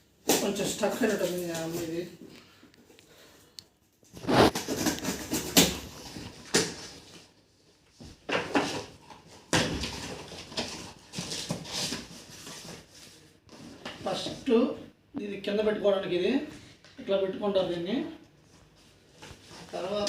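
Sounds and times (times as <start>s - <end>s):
cardboard box scraping and rustling: 4.2s - 6.5s, 8.5s - 13.8s.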